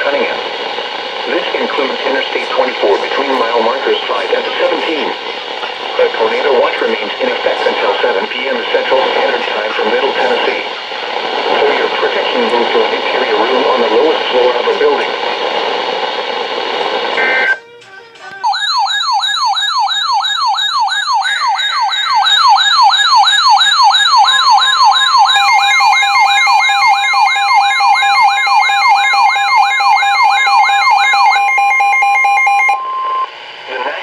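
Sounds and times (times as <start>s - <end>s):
electronic siren yelping: 17.2s - 33.2s.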